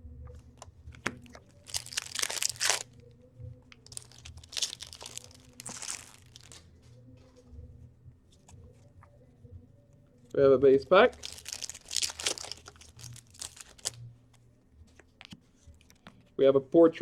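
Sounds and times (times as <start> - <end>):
cards clicking: 0.4 - 2.9
wrapper tearing and crinkling: 1.1 - 3.0, 3.8 - 6.6, 11.0 - 14.0.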